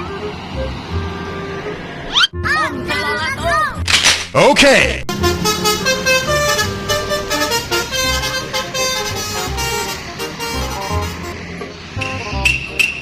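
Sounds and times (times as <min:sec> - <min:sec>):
musical air horn tune: 0:05.1 - 0:13.0.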